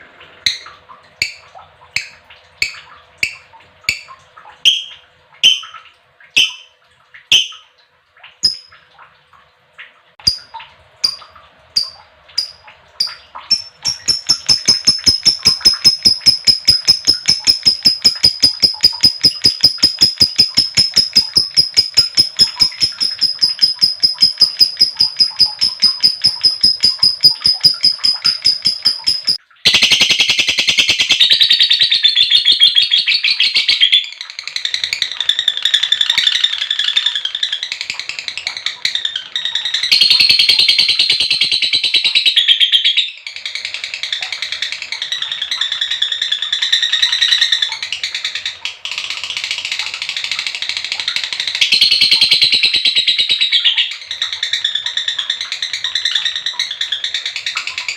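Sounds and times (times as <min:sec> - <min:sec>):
lovebird chirping and trilling: 0:02.0 - 0:05.8, 0:06.4 - 0:06.7, 0:07.3 - 0:07.7, 0:08.4 - 0:08.8, 0:11.8 - 0:37.7, 0:38.4 - 0:43.2, 0:51.6 - 0:54.9.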